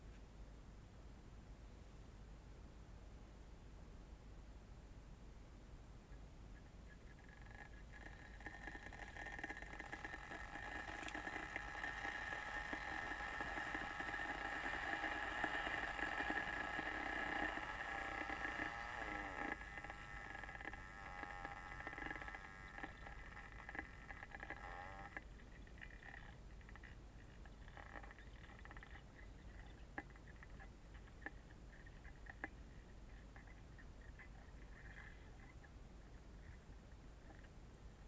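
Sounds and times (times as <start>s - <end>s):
kettle heating water: 7.4s - 26.8s.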